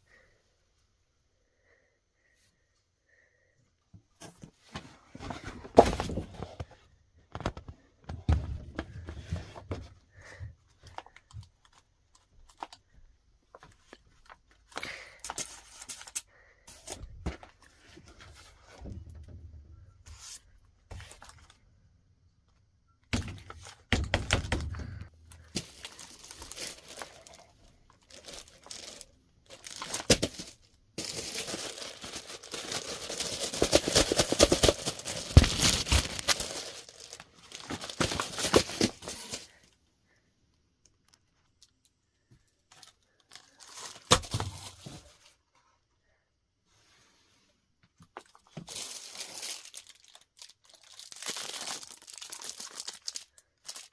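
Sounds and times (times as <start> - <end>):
packaging crinkling and tearing: 25.3 - 39.6, 48.2 - 53.9.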